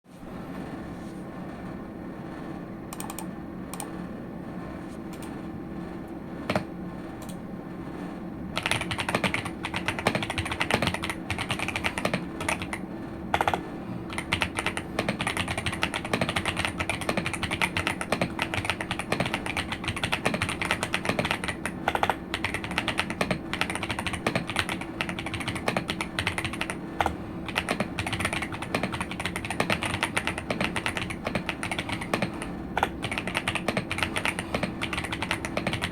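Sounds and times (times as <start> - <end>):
mechanical keyboard typing: 2.9 - 3.9, 8.6 - 35.9.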